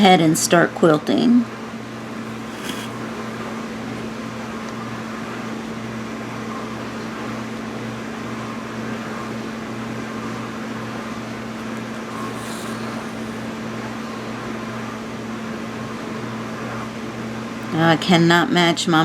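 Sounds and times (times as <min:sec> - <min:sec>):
even hiss: 0:02.2 - 0:03.1, 0:12.0 - 0:14.5.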